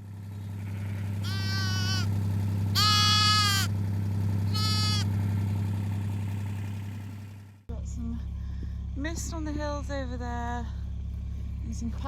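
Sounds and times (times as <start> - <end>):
vehicle engine running: 0.0 - 12.0
sheep bleating: 0.6 - 3.7, 4.5 - 5.1.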